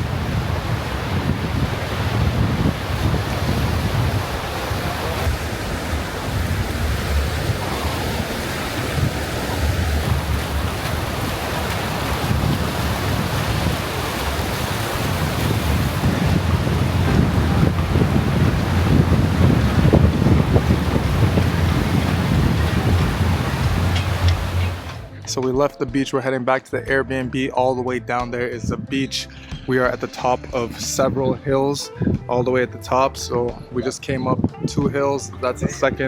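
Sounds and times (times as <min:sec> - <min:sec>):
ocean surf washing: 0:00.0 - 0:25.1
wind buffeting microphone: 0:00.0 - 0:25.1, 0:31.0 - 0:32.4, 0:33.5 - 0:35.0.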